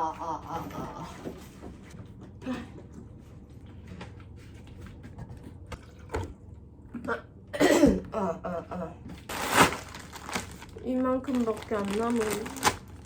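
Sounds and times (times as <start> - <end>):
person coughing: 7.1 - 9.0.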